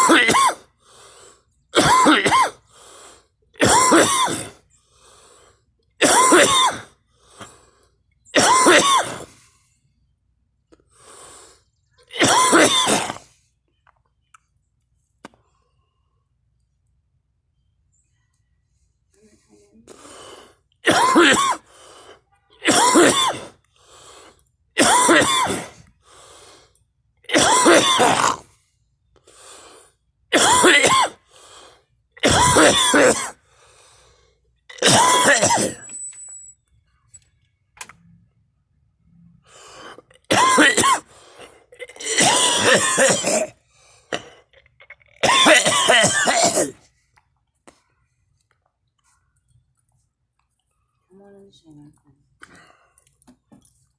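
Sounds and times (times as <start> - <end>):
person coughing hard: 0.0 - 0.7, 1.8 - 2.7, 3.6 - 4.6, 6.0 - 7.0, 8.4 - 9.4, 12.1 - 13.3, 20.8 - 21.7, 22.6 - 23.6, 24.8 - 25.8, 27.3 - 28.5, 30.3 - 31.3, 32.2 - 33.4, 34.7 - 36.0, 40.0 - 44.5, 45.2 - 46.8
breaths and throat sounds: 19.8 - 36.0, 39.4 - 49.5.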